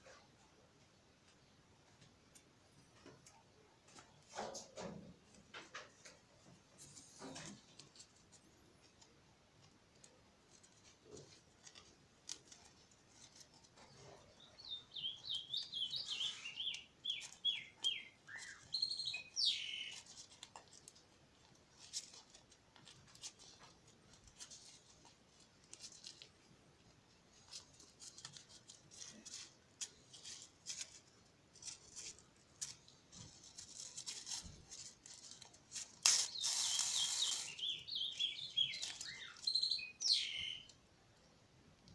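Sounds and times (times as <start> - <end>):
rustling: 0.0 - 40.8
bird chirping: 12.5 - 20.4, 36.1 - 40.8.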